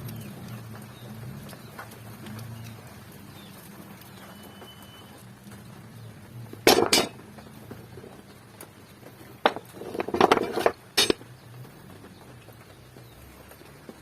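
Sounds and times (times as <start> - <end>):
knocks and clinks of hard objects: 6.6 - 7.2, 9.4 - 11.2.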